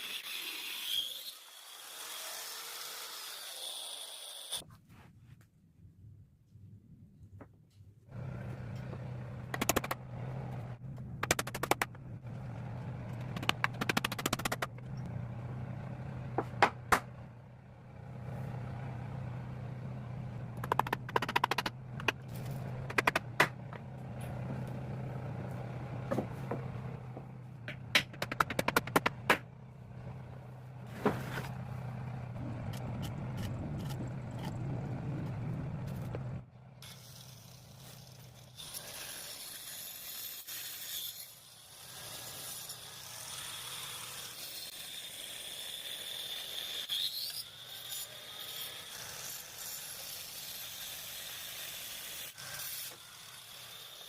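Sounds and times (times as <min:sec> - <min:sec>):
knocks and clatter on wood: 0:26.0 - 0:29.4.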